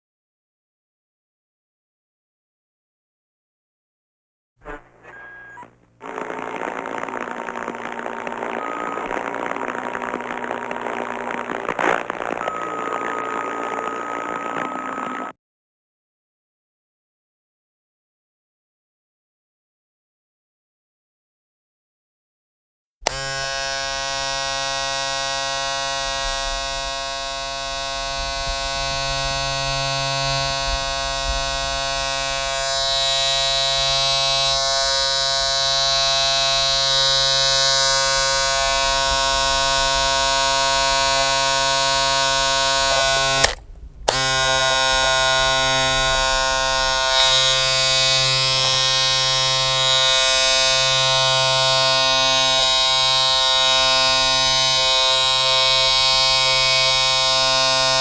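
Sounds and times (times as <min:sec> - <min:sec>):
steady electric buzz: 0:04.6 - 0:12.4, 0:23.1 - 0:58.0.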